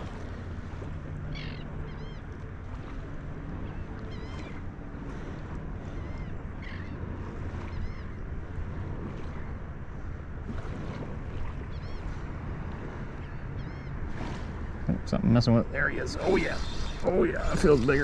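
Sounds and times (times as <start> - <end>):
wind on microphone: 2.4 - 18.0
surf washing up on beach: 14.1 - 18.0.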